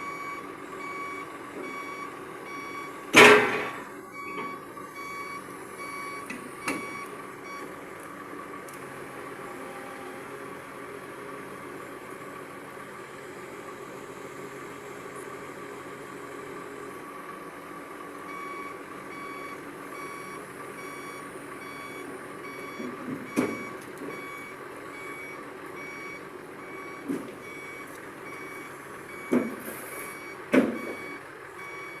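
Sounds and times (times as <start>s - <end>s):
excavator alarm beeping: 0.0s - 7.7s, 18.3s - 32.0s
diesel engine running: 0.0s - 32.0s.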